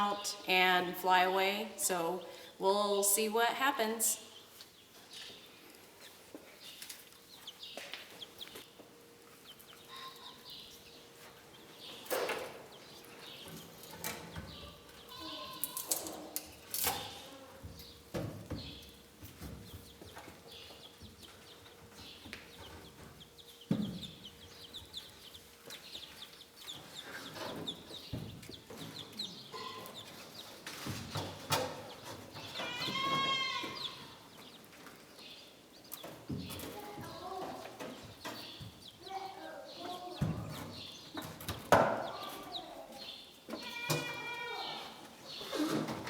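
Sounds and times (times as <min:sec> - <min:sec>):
chickens clucking: 0:18.6 - 0:43.8.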